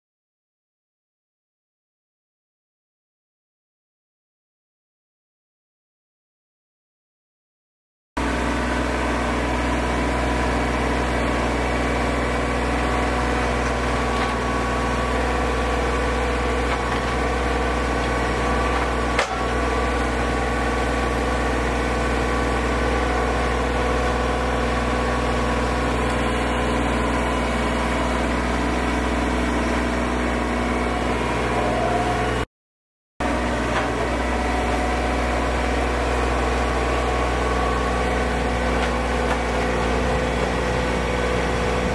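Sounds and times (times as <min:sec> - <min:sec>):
engine running steadily: 0:08.2 - 0:32.4, 0:33.2 - 0:41.9.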